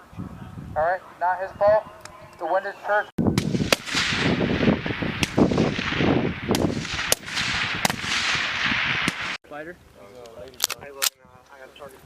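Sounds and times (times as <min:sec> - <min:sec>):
rifle shots: 0:03.4 - 0:09.4.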